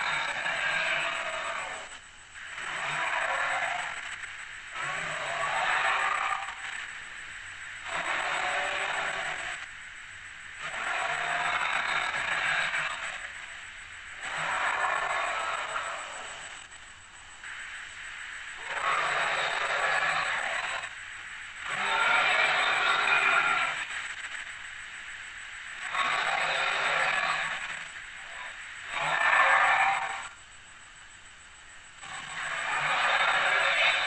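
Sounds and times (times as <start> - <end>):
hoarse breathy dinosaur roars: 32.1 - 34.0.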